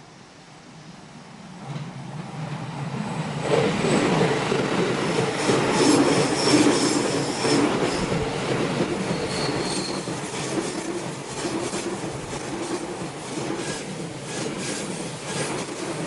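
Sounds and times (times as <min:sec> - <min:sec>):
train wheels clattering on rail joints: 0:03.4 - 0:16.0
wheel flange squeal: 0:05.7 - 0:08.2, 0:09.0 - 0:10.8.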